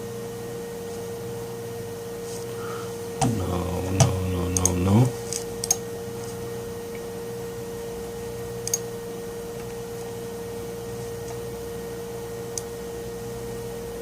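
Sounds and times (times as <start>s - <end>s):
steady electrical hum: 0.0s - 14.0s
computer mouse clicks: 4.0s - 5.8s, 8.6s - 8.8s.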